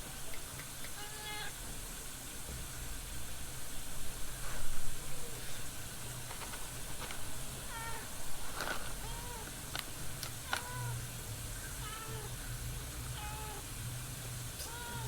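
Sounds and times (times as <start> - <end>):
steady background hiss: 0.0 - 15.0
cat meowing: 0.9 - 1.6, 7.6 - 9.7, 10.3 - 12.4, 13.1 - 13.7, 14.6 - 15.0.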